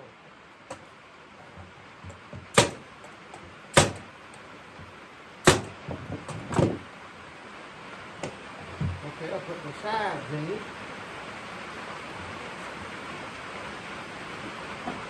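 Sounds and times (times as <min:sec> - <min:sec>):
wooden parts knocked together: 0:05.5 - 0:06.8.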